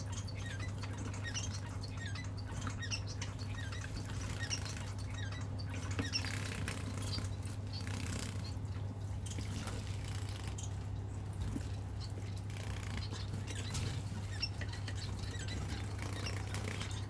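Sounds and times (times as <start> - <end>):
wings fluttering in water: 5.8 - 17.0.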